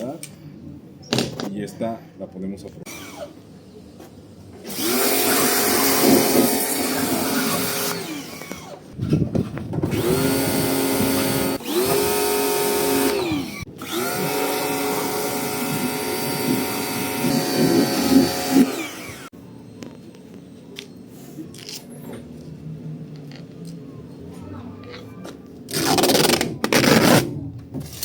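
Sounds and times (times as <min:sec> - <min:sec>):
pressure washer motor: 0:04.7 - 0:08.8, 0:09.9 - 0:19.3.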